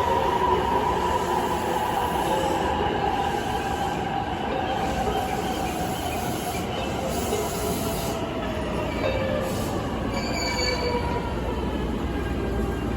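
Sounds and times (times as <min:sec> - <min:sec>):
wheels and brakes squealing: 0:08.9 - 0:11.2.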